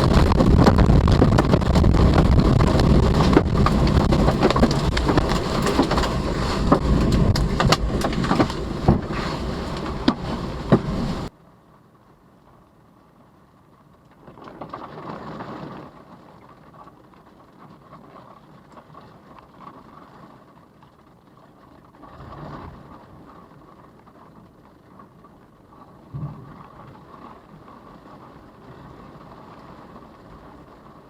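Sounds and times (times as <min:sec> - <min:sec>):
wind and rain buffeting car: 0:00.0 - 0:31.0
thud: 0:26.1 - 0:26.6.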